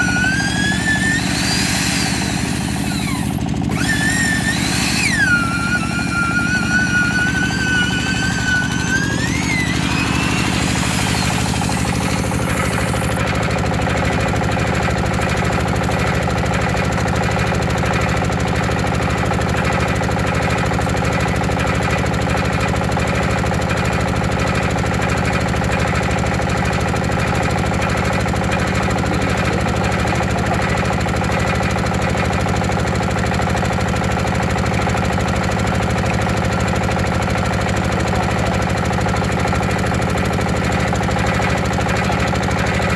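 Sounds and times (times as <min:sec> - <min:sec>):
engine droning: 0:00.0 - 0:42.9
high wavering tone: 0:03.9 - 0:13.2.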